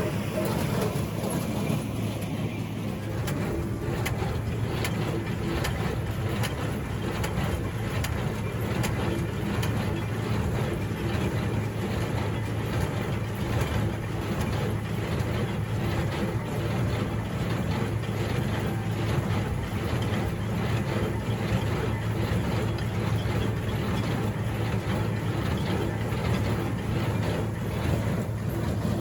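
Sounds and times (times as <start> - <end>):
tractor engine running under load: 0.0 - 29.0.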